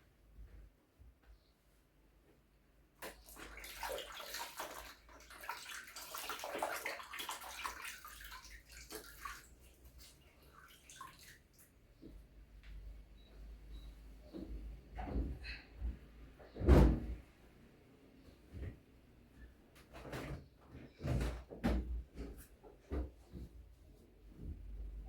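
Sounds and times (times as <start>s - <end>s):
water running and splashing: 3.0s - 11.6s.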